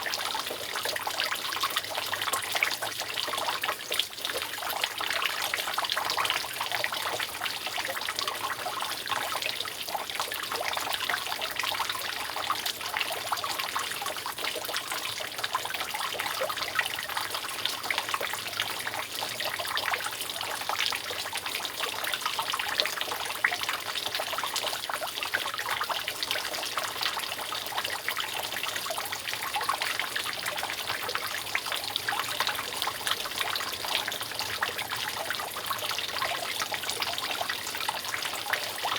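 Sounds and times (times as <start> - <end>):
rainwater dripping from roof: 0.0 - 38.9.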